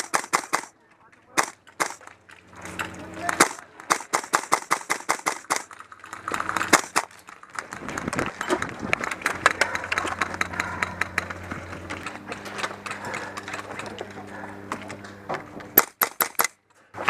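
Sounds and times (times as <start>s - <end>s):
airsoft gunfire: 0.0s - 0.7s, 1.4s - 2.0s, 3.4s - 5.8s, 6.7s - 7.1s, 15.8s - 16.6s.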